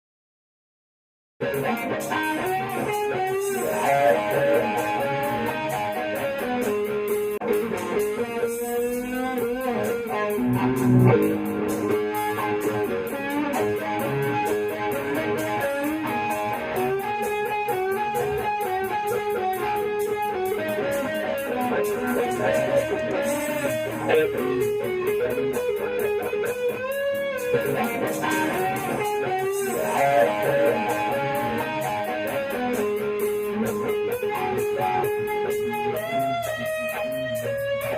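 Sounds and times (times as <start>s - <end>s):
electric guitar with wah: 1.4s - 37.9s.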